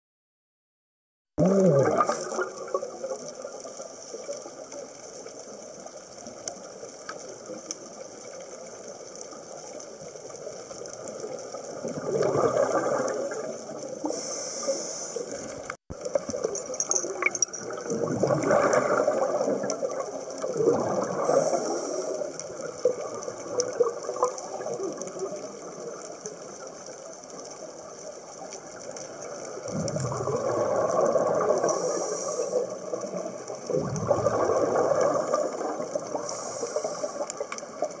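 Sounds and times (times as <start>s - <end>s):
exhaled bubbles gurgling: 1.4s - 38.0s
underwater noise: 1.4s - 38.0s
regulator inhaling hiss: 14.0s - 15.6s, 21.2s - 22.4s, 31.6s - 32.9s, 36.1s - 37.6s.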